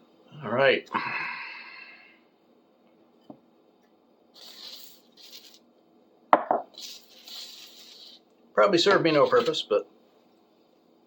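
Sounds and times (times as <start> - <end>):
sandpaper rubbing on metal: 4.4 - 5.6, 6.8 - 8.2, 8.9 - 9.6.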